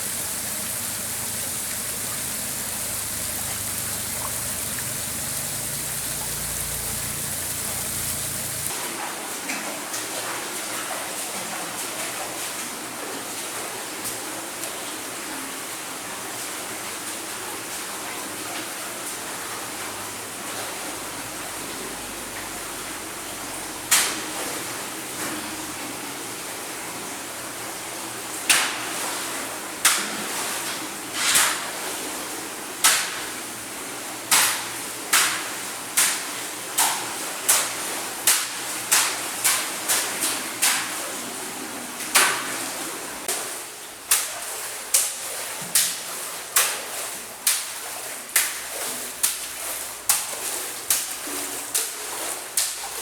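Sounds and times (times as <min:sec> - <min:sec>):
stream water running: 0:00.0 - 0:53.0
sharp splashy slaps: 0:23.9 - 0:24.3, 0:28.5 - 0:29.0, 0:29.8 - 0:30.5, 0:31.2 - 0:31.8, 0:32.8 - 0:33.4, 0:34.3 - 0:41.1, 0:42.0 - 0:42.7, 0:43.3 - 0:53.0.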